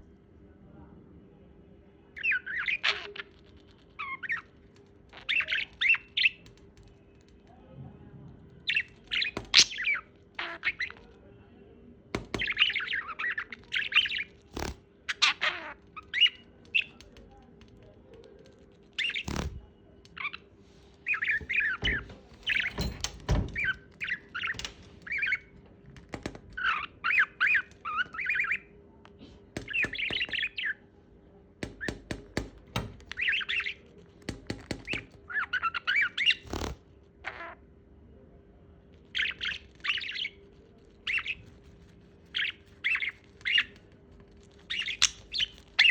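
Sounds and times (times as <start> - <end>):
parrot chattering and squawking: 8.7 - 11.0, 12.2 - 17.0, 34.8 - 37.7.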